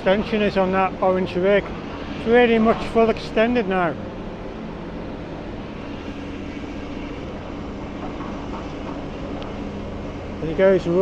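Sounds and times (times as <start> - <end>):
excavator engine drone: 0.0 - 11.0.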